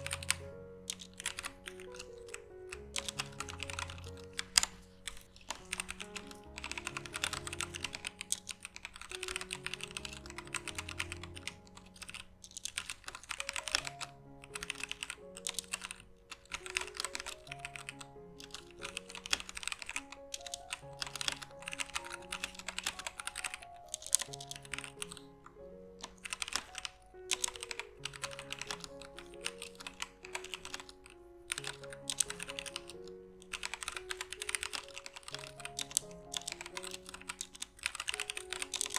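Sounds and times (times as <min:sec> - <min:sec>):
background music soft notes: 0:00.0 - 0:38.9
mechanical keyboard typing: 0:00.0 - 0:38.9.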